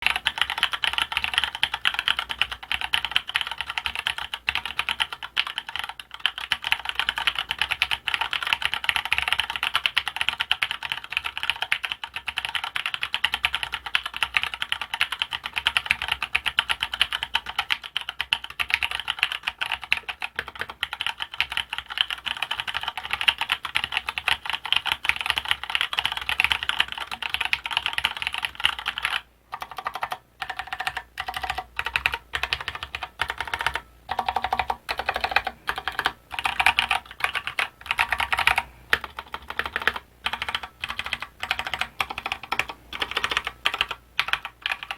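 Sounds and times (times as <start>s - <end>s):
mechanical keyboard typing: 0.0s - 44.9s.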